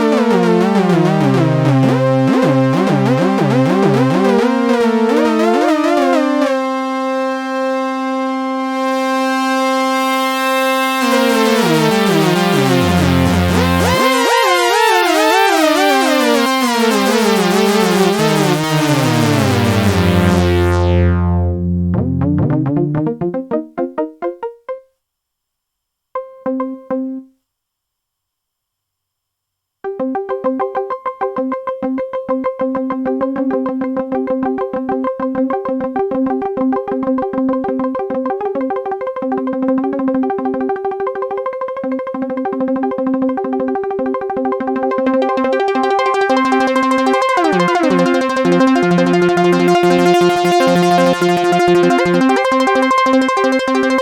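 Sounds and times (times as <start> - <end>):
fast repeating synth notes: 0.0 - 7.2, 9.1 - 24.7, 30.0 - 54.0
wobbling synth tone sweeping down: 0.1 - 6.8, 11.0 - 24.4.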